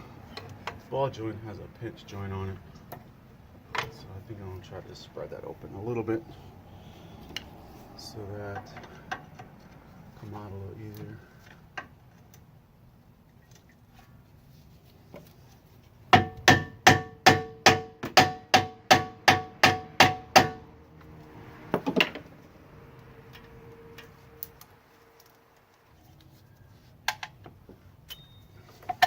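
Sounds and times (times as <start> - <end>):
hammer striking steel: 16.2 - 20.6.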